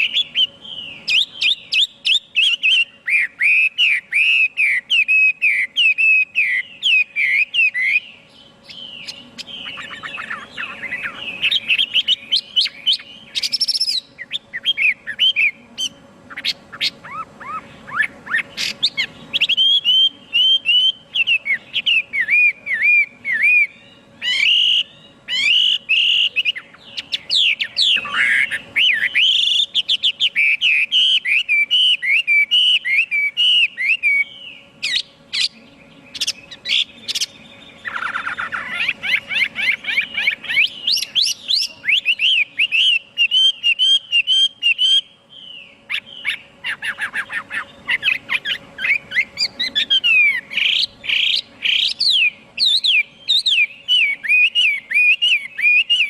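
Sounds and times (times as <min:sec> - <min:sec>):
bird singing whistled phrases: 0:00.0 - 0:56.0.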